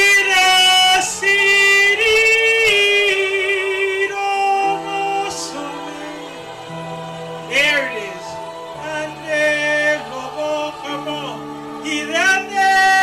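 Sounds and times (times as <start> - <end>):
sustained accompaniment chords: 0.0 - 13.0.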